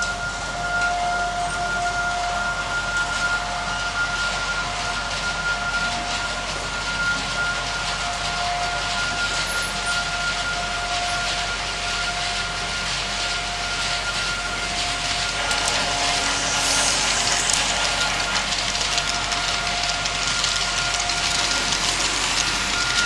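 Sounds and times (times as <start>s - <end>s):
wheels hissing on rails: 0.0s - 23.0s
electric motor whine: 14.4s - 23.0s.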